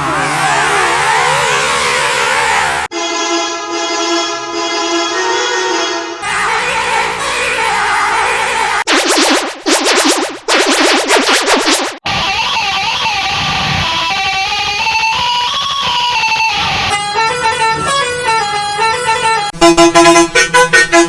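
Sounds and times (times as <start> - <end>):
bus horn melody: 2.9 - 6.2.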